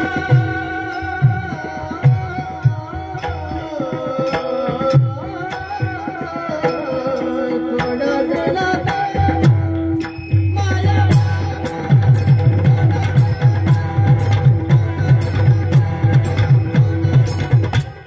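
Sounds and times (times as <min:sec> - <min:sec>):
mridang drum strokes: 0:00.0 - 0:18.0.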